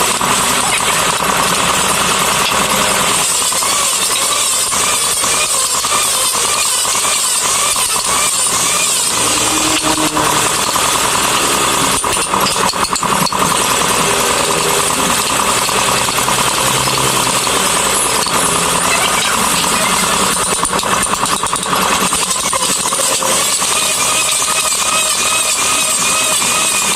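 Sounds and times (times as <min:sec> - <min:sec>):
woodworking power tool running: 0:00.0 - 0:26.9
low droning note: 0:07.9 - 0:20.2.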